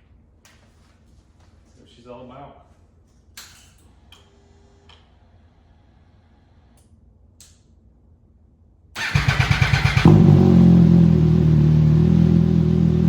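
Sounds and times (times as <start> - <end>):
starter motor cranking: 9.0 - 10.2
motorcycle engine running: 9.0 - 13.0.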